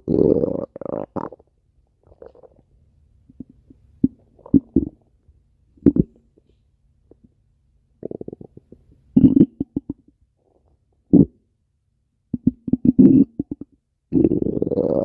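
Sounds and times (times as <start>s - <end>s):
stomach growling: 0.0s - 2.7s, 3.3s - 5.0s, 8.0s - 10.1s, 12.4s - 15.0s.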